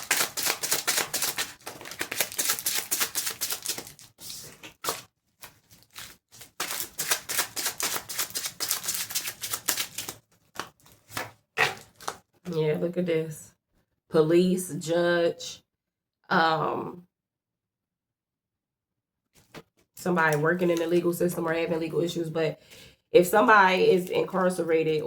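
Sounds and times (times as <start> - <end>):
cards being shuffled: 0.0 - 12.2.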